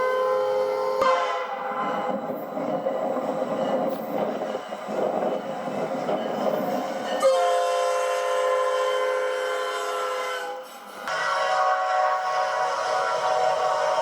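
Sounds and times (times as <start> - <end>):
train horn chord: 0.0 - 2.0, 7.2 - 14.0
train noise: 0.0 - 14.0.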